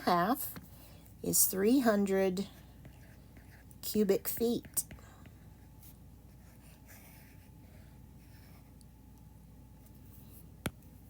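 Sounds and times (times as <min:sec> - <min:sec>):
scratching of writing strokes: 0:01.8 - 0:08.9.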